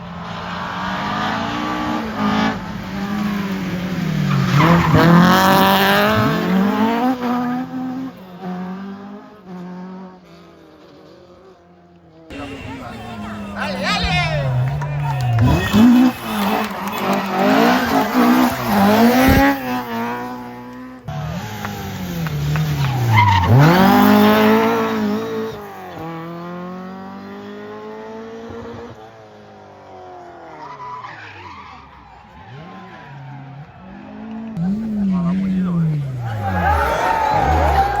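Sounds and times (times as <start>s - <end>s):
rally car braking and passing: 0.0s - 38.0s
rally car engines revving: 0.0s - 38.0s.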